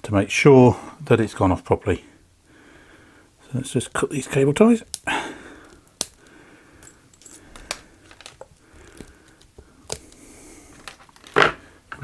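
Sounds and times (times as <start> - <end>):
plastic cable ties snapping: 4.8 - 5.1, 5.7 - 6.3, 7.5 - 10.2.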